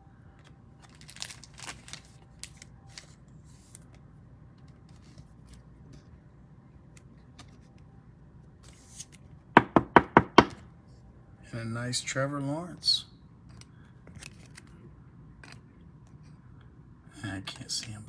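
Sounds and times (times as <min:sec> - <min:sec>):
trading cards rustling: 0:00.8 - 0:03.9.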